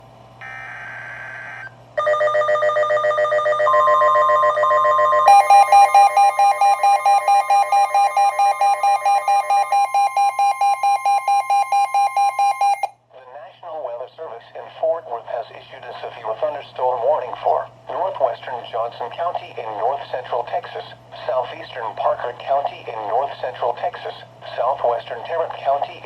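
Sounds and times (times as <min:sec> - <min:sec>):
steady warning tone: 0:00.4 - 0:12.9
fast electronic beeping: 0:04.9 - 0:12.9.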